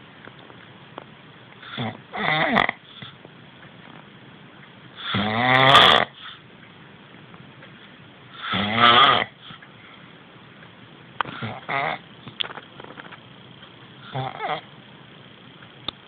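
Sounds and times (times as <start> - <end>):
man snoring: 1.7 - 2.8, 5.0 - 6.2, 8.4 - 9.4.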